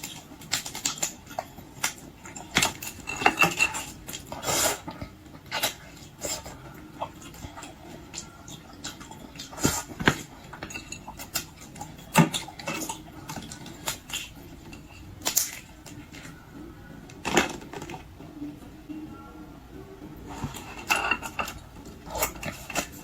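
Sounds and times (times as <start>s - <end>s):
utensils and shells clattering: 0.0s - 6.6s, 8.5s - 16.3s, 20.4s - 23.0s
chewing: 0.0s - 18.2s, 20.2s - 23.0s.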